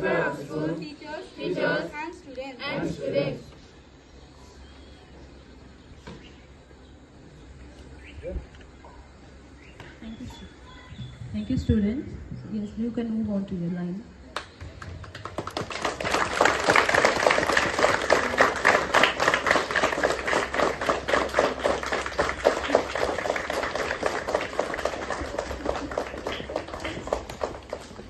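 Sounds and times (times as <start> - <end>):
audience applauding: 14.4 - 28.0.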